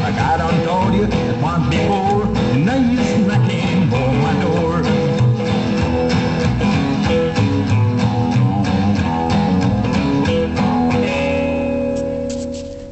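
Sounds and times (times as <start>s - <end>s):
rockabilly band playing: 0.0s - 12.9s.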